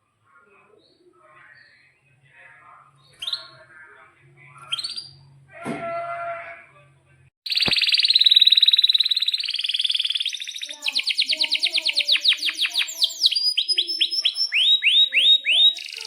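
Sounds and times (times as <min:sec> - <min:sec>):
canary singing: 0:02.9 - 0:03.8, 0:04.6 - 0:05.4, 0:07.5 - 0:16.0.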